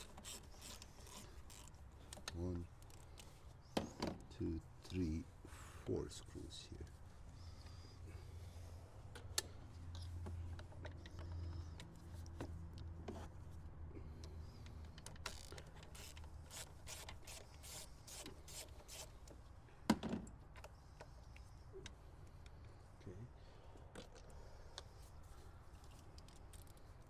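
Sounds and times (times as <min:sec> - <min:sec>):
hand tool rasping clicks: 0:00.0 - 0:01.8.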